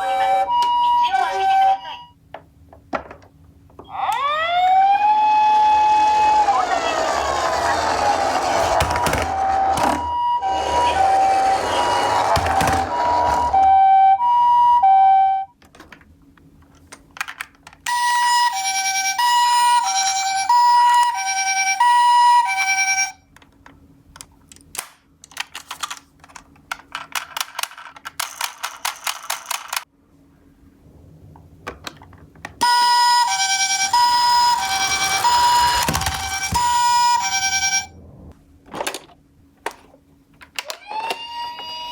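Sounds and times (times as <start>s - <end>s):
toy two-tone siren: 0.0s - 2.1s, 3.9s - 15.5s, 17.9s - 23.2s, 32.6s - 37.9s, 40.6s - 41.9s.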